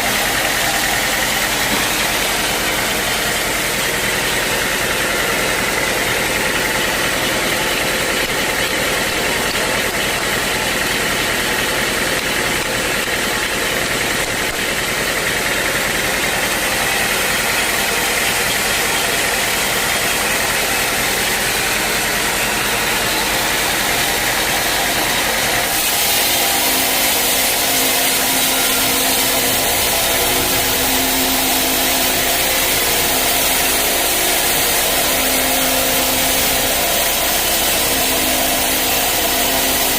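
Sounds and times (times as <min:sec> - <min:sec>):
sawmill machinery running: 0:00.0 - 0:39.9
steady low hum: 0:20.0 - 0:39.9.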